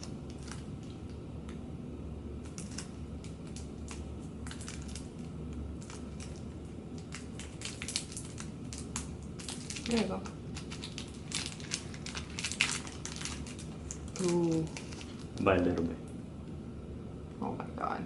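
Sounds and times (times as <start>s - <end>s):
wrapper crinkling: 0.0s - 1.0s, 2.4s - 15.7s.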